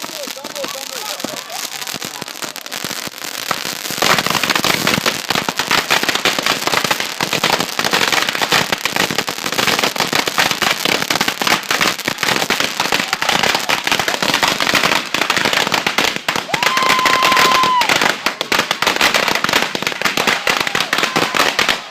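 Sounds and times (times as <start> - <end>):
string of firecrackers popping: 0.0 - 21.9.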